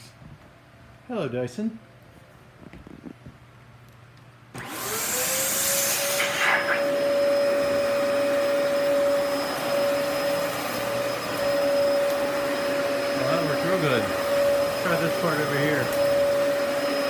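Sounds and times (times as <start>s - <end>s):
vacuum cleaner motor whine: 4.5s - 17.0s.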